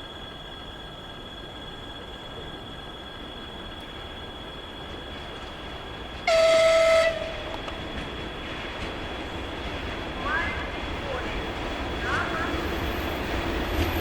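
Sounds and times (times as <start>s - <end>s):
faint high whine: 0.0s - 8.6s
moving train noise: 0.0s - 14.0s
locomotive horn blast: 6.3s - 7.6s.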